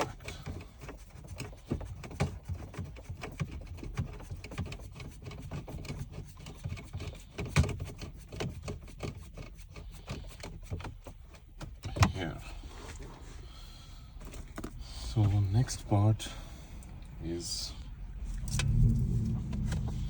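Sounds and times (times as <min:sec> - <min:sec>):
small clicks and knocks: 0:00.0 - 0:12.2
hands handling wiring and parts: 0:00.0 - 0:17.2.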